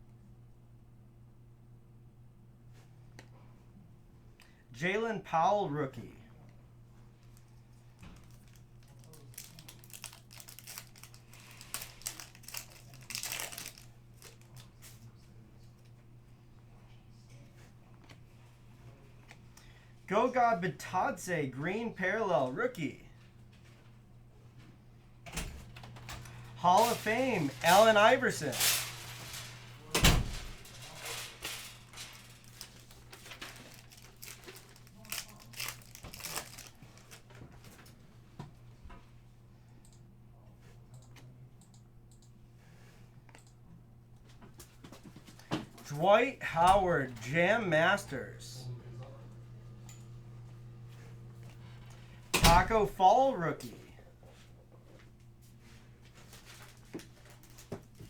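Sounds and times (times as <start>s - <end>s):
low electrical hum: 0.0s - 58.0s
plastic foil wrapper crinkling: 8.2s - 14.7s, 26.3s - 37.2s.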